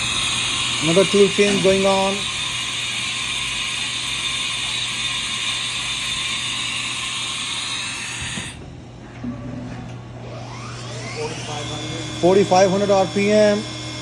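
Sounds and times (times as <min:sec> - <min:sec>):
low machine hum: 0:08.5 - 0:14.0.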